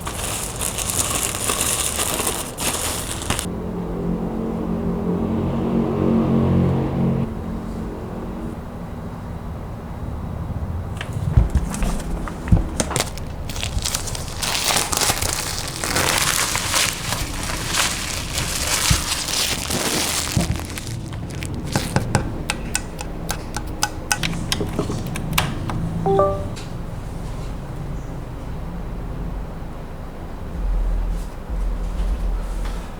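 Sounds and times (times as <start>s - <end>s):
packaging crinkling and rustling: 0.0s - 3.5s, 11.0s - 22.3s.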